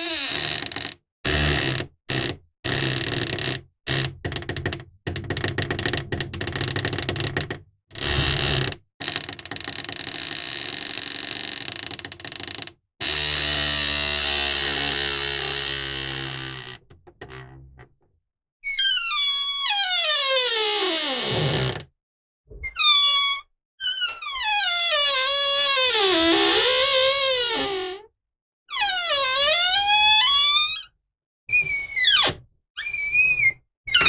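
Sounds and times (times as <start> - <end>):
wooden door hinge creaking: 0.0 - 18.0, 23.8 - 28.1, 33.1 - 34.0.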